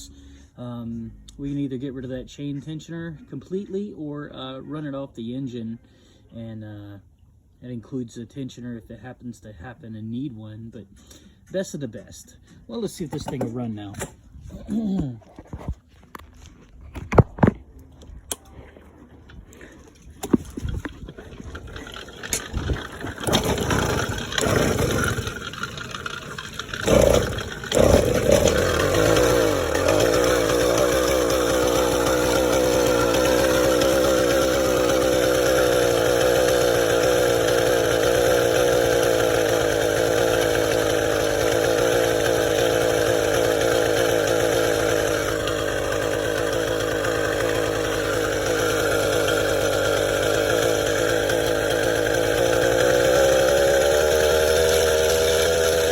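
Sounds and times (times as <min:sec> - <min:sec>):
small engine starting and running: 0:19.6 - 0:55.9.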